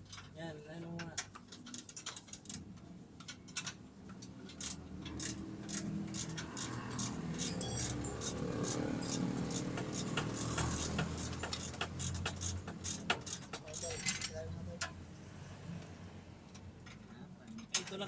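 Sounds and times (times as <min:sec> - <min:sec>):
metal hand tools clinking: 0:05.2 - 0:14.4.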